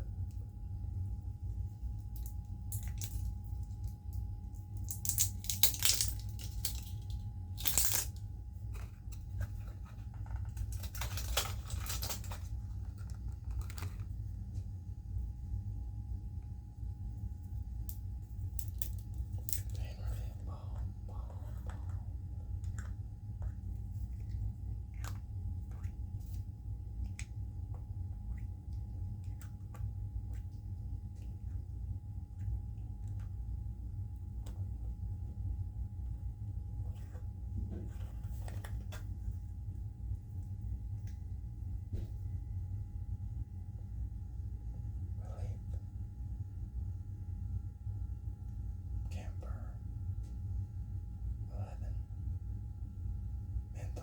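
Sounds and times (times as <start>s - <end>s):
steady low hum: 0.0s - 54.0s
packaging crinkling and tearing: 4.8s - 8.2s, 8.8s - 14.2s.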